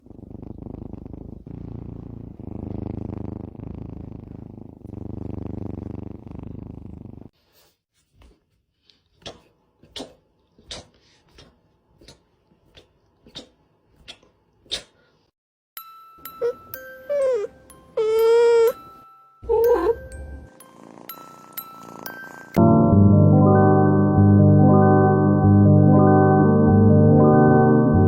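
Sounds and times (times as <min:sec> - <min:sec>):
cat purring: 0:00.0 - 0:07.4, 0:19.5 - 0:22.6.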